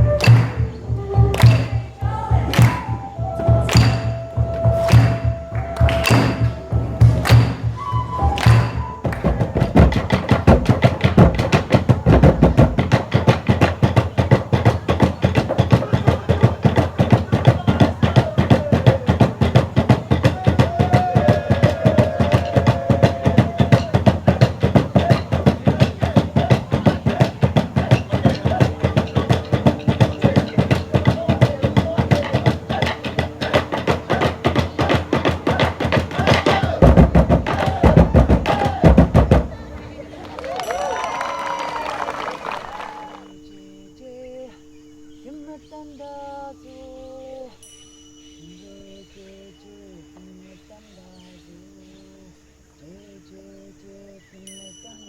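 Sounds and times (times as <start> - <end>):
drum beaten fast: 0.0 - 43.3.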